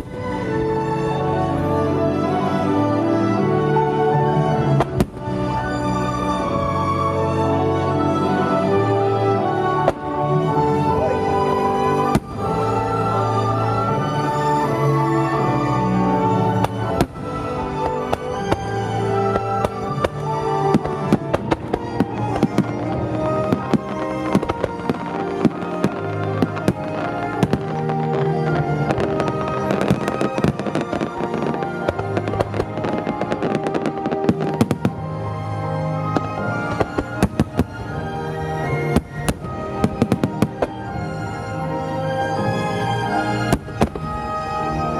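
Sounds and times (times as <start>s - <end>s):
fireworks bangs and crackles: 0.0s - 2.6s, 3.4s - 7.1s, 8.2s - 44.9s.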